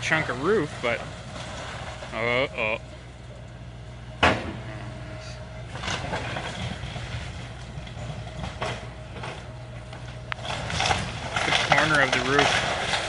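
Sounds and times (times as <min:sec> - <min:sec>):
timbers crackling and crunching: 0:00.0 - 0:04.6, 0:05.4 - 0:13.0
heavy machine engine humming: 0:00.0 - 0:13.0
roof crashing: 0:10.4 - 0:13.0.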